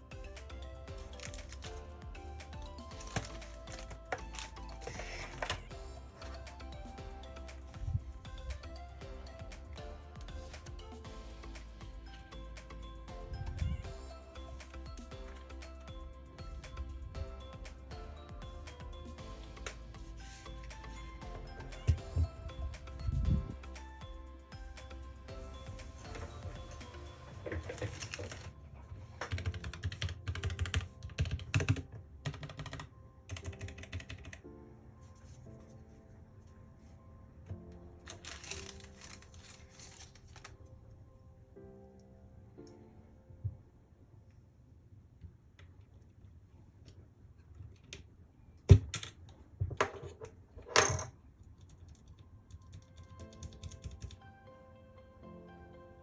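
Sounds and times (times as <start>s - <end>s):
soft background music: 0.0s - 45.6s, 49.0s - 56.0s
mechanical keyboard typing: 29.2s - 34.4s, 51.6s - 54.2s
mechanical keyboard key clicks: 51.6s - 54.2s.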